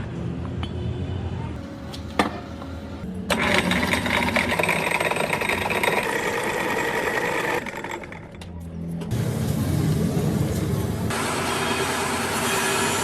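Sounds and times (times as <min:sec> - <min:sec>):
small machine rattling: 0:03.3 - 0:08.4.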